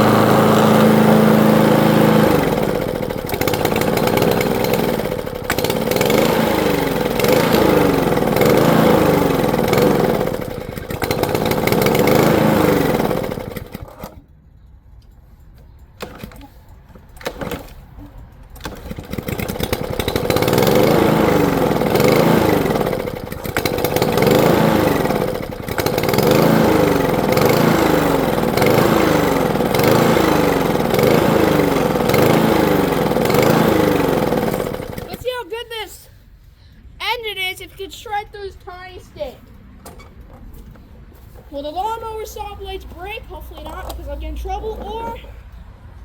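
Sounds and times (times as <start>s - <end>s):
lawn mower engine running: 0.0s - 14.2s, 17.1s - 17.9s, 18.5s - 35.4s.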